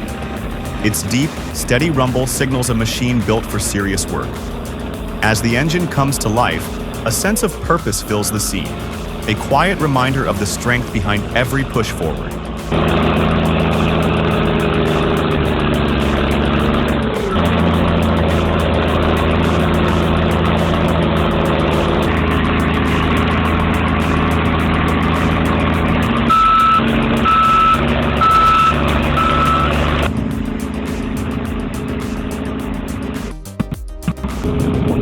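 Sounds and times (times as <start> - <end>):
bulldozer diesel engine running: 0.0 - 33.1
reversing alarm beeps: 26.3 - 30.0.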